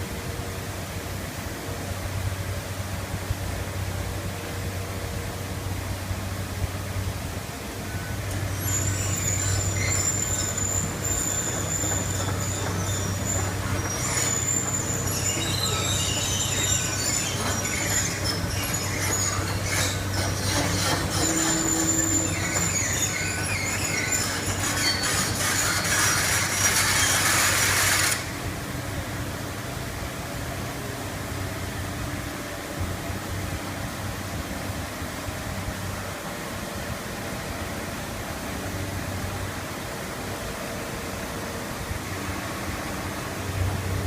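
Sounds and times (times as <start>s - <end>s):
construction machinery humming: 0.0s - 34.2s
metal squealing and scraping: 8.3s - 28.3s
grinding hiss: 8.3s - 28.6s.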